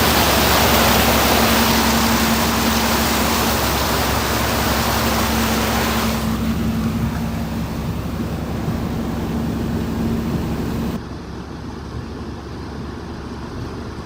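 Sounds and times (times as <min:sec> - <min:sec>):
rush of water: 0:00.0 - 0:11.0
vehicle engine humming: 0:00.0 - 0:11.0.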